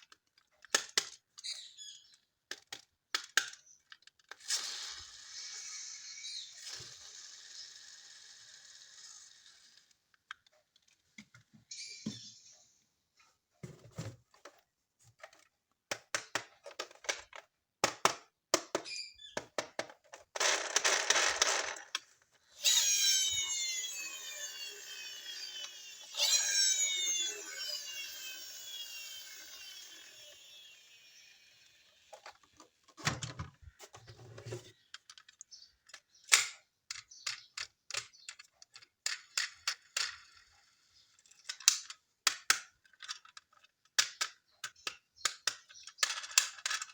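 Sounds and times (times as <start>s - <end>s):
plastic toy parts clicking: 0.0s - 11.0s, 15.2s - 22.2s, 34.9s - 46.9s
electronic toy sweeping tones: 22.6s - 32.0s.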